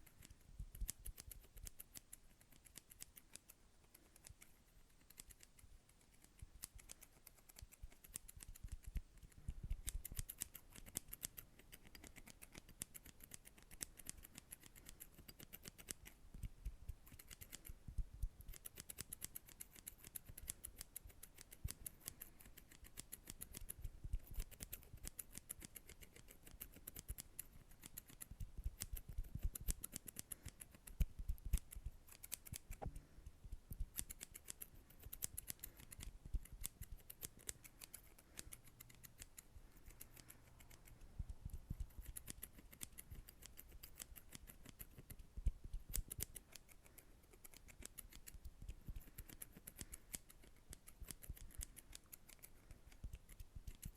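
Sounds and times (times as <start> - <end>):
crisp clicks and crackles: 33.8 - 53.9.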